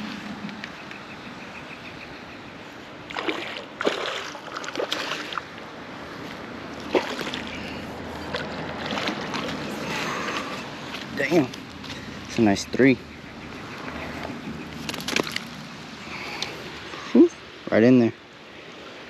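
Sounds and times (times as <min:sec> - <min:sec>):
fish splashing in water: 0:03.1 - 0:05.6, 0:06.8 - 0:11.1.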